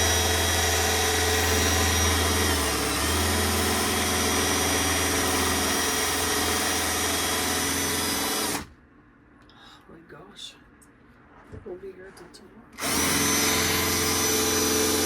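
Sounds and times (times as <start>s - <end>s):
electric saw cutting countertop: 0.0s - 8.7s, 12.8s - 15.0s.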